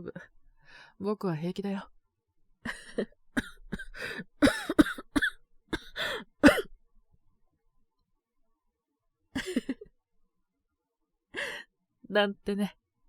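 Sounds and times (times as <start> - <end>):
person coughing: 3.4 - 6.7, 9.4 - 9.8
quick breaths: 5.9 - 6.3.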